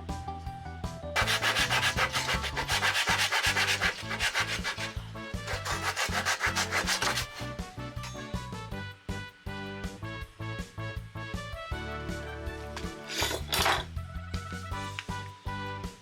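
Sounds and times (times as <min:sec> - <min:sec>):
background music: 0:00.0 - 0:16.0
hand sanding wood: 0:01.2 - 0:07.5.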